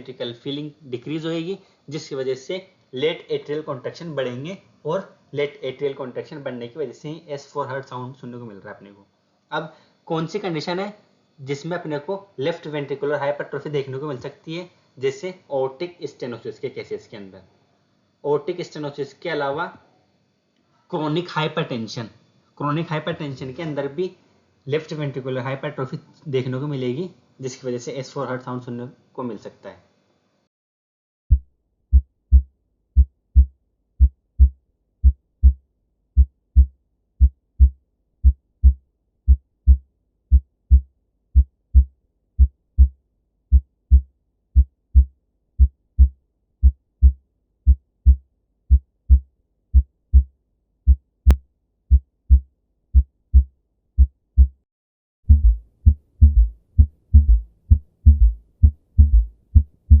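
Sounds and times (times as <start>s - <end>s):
heartbeat through stethoscope: 31.3s - 35.6s, 36.2s - 50.3s, 50.9s - 54.6s, 55.3s - 60.0s.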